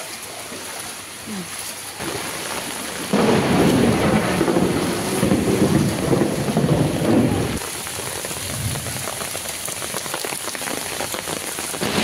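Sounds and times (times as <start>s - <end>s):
heavy rain: 0.0s - 12.0s
thunder rumbling: 2.0s - 9.5s, 11.8s - 12.0s.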